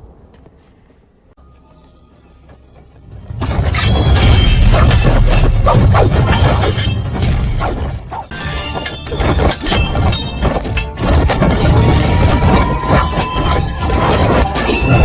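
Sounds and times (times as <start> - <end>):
music: 1.4 - 6.1, 8.3 - 15.0
crashing and shattering impacts: 3.3 - 15.0.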